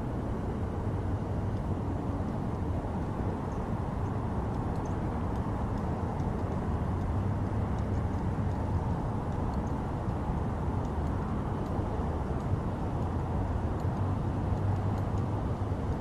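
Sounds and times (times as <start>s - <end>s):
highway traffic rumble: 0.0s - 16.0s
faint high ticks: 3.5s - 16.0s.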